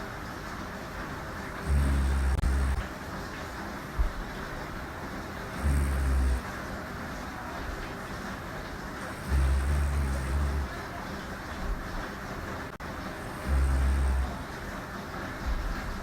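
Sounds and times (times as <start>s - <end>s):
woman snoring: 1.6s - 2.9s, 5.5s - 6.5s, 9.0s - 10.8s, 13.2s - 14.5s.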